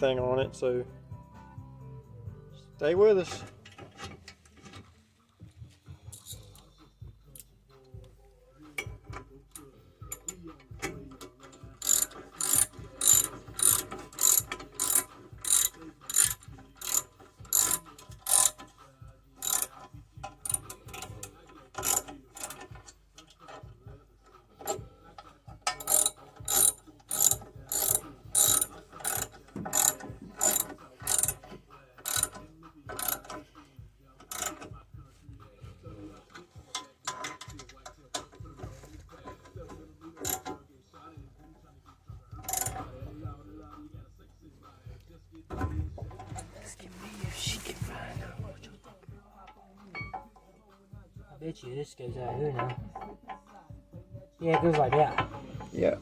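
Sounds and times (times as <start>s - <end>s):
ratchet wrench clicking: 6.1s - 6.7s, 9.5s - 10.4s, 11.2s - 18.8s, 19.4s - 23.6s, 25.6s - 33.4s, 34.2s - 34.7s, 36.3s - 40.6s, 42.3s - 43.0s.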